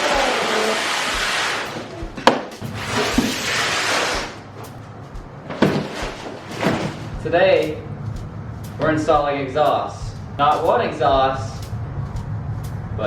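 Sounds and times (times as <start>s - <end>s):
music with low beat: 1.2s - 2.8s, 4.2s - 6.3s, 7.0s - 13.0s.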